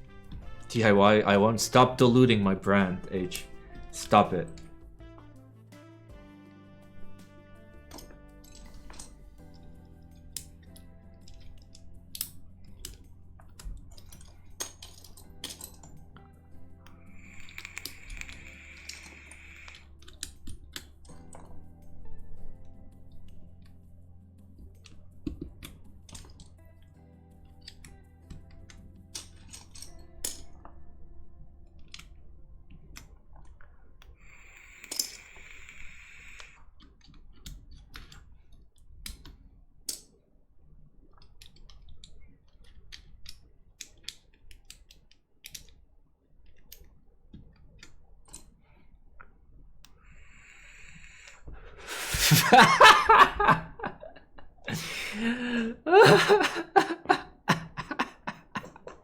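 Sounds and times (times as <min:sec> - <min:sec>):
person laughing loudly: 0:51.9 - 0:59.0.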